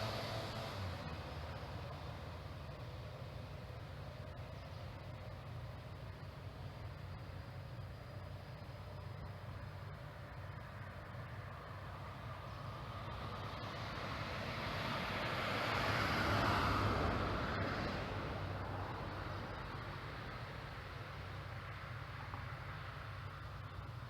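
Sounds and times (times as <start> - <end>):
vehicle passing by: 0.0 - 1.7, 12.7 - 20.0.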